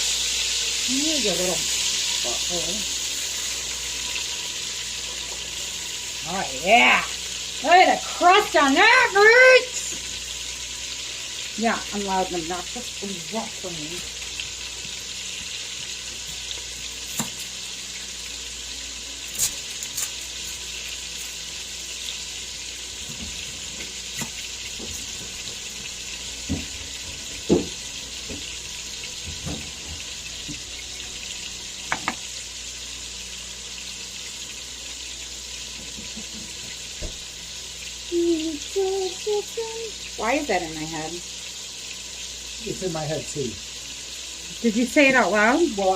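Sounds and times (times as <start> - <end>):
meat sizzling in a pot: 0.0 - 45.9
utensil knocking against pot: 31.9 - 32.2.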